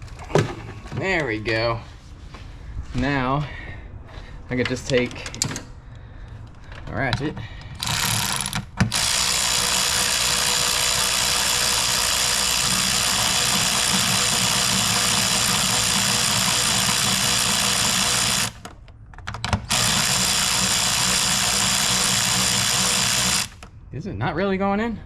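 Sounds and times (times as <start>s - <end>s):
small motor whirring: 7.8s - 18.7s, 19.6s - 23.7s.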